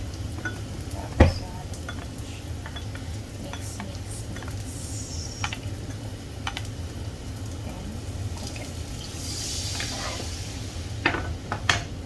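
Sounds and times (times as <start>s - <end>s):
steady low hum: 0.0s - 12.0s
utensil tapping pan: 0.2s - 6.7s
liquid hissing in hot pan: 0.9s - 12.0s.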